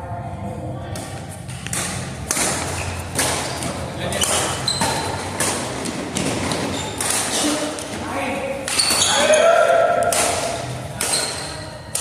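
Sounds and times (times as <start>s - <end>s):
voices in echoing hall: 0.0s - 12.0s
racket hits and thuds: 1.0s - 8.0s, 8.6s - 12.0s
shoe squeaks: 2.7s - 5.4s, 6.5s - 7.8s, 8.7s - 9.4s, 11.0s - 11.9s.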